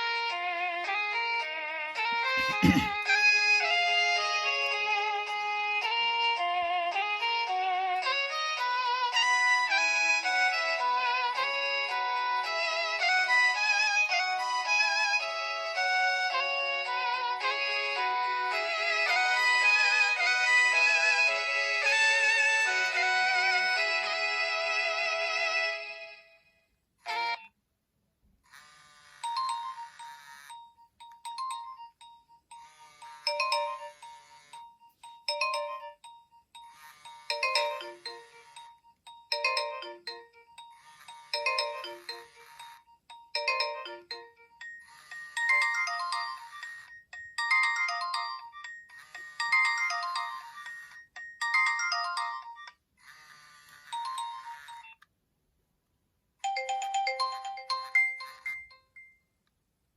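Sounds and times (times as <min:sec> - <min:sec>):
synthesized polyphonic ringtone melody: 0:29.2 - 0:55.0, 0:56.4 - 0:59.3.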